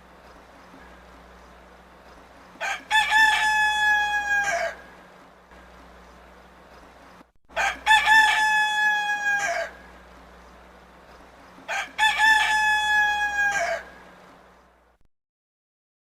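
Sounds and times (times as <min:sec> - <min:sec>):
rooster crowing: 0:02.6 - 0:05.0, 0:07.5 - 0:10.0, 0:11.6 - 0:14.2.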